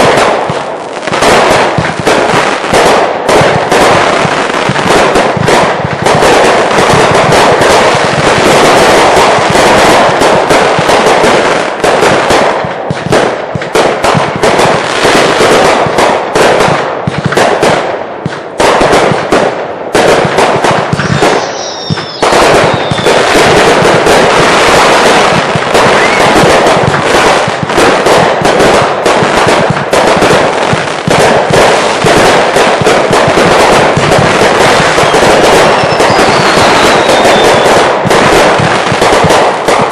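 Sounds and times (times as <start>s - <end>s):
fireworks bangs and crackling: 0.0s - 39.9s
falling firework whistle: 20.9s - 23.8s, 25.0s - 26.7s, 34.8s - 37.8s.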